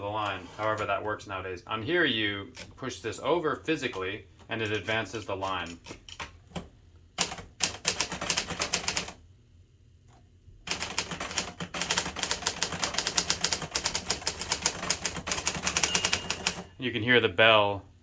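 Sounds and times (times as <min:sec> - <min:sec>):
manual typewriter keystrokes: 0:02.5 - 0:02.8, 0:03.8 - 0:09.2, 0:10.7 - 0:16.7.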